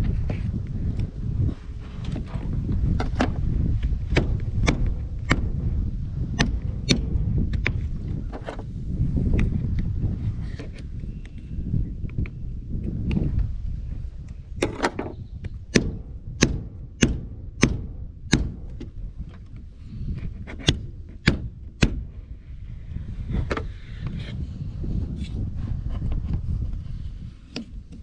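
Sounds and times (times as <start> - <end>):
sharp knocks on glass: 15.7 - 18.8.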